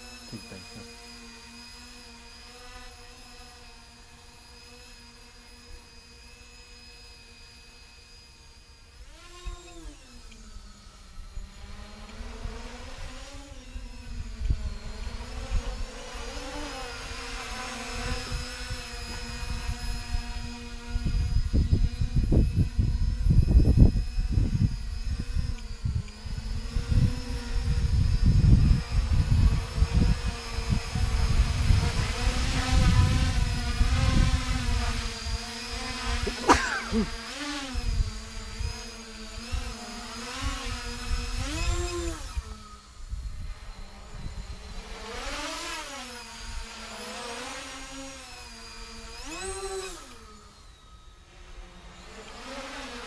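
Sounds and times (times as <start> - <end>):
drone motors whining: 0.0 - 53.0
wind buffeting microphone: 18.0 - 35.5.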